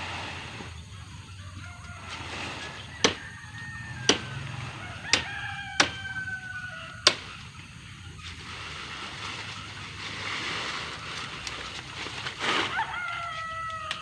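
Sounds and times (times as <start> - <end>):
rooster crowing: 1.3 - 7.2, 12.5 - 14.0
sharp knocks: 5.1 - 6.0.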